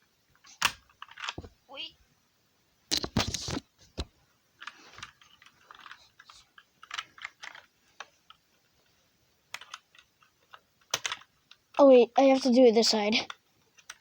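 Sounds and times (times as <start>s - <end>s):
plastic keyboard clicks: 10.8s - 11.6s.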